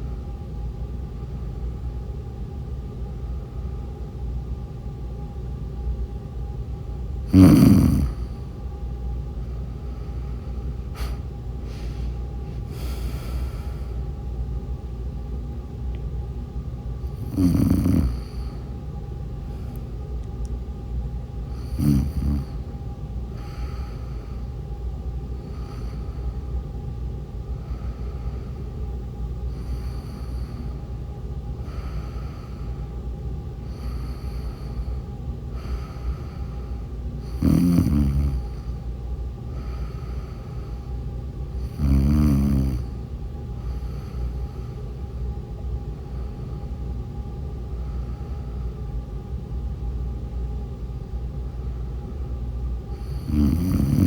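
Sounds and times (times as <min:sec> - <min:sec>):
steady low hum: 0:00.0 - 0:54.0
soft sleeping breaths: 0:07.2 - 0:08.6, 0:09.3 - 0:14.2, 0:17.0 - 0:20.0, 0:21.4 - 0:26.7, 0:27.4 - 0:49.1, 0:51.4 - 0:54.0
loud snores: 0:07.3 - 0:08.4, 0:17.1 - 0:18.5, 0:21.6 - 0:22.6, 0:37.3 - 0:38.6, 0:41.6 - 0:42.9, 0:53.0 - 0:54.0.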